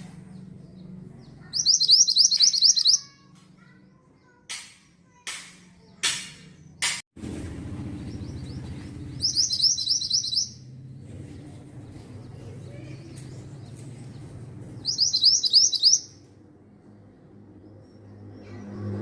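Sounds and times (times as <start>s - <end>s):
bird singing high notes: 1.4s - 3.2s, 9.2s - 10.8s, 14.8s - 16.2s.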